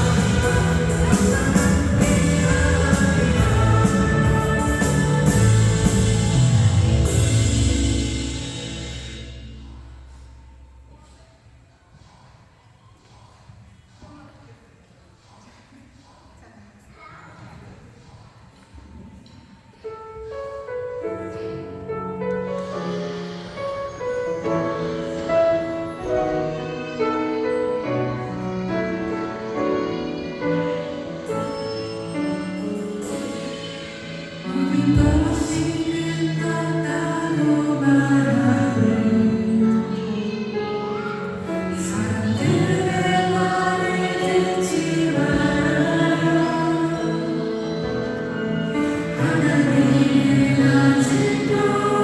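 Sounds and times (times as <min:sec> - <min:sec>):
group singing worship song: 0:00.0 - 0:07.2, 0:33.8 - 0:40.5, 0:41.4 - 0:48.1, 0:48.7 - 0:52.0
keyboard playing chords and melody: 0:00.0 - 0:10.4, 0:24.2 - 0:52.0
musical accompaniment: 0:00.0 - 0:10.9, 0:20.9 - 0:52.0.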